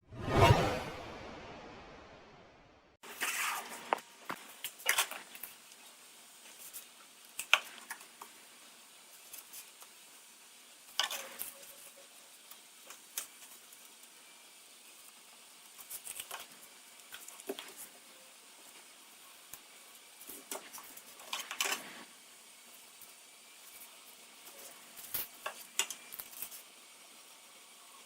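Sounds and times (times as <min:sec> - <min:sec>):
short scrapes: 0:00.1 - 0:02.0.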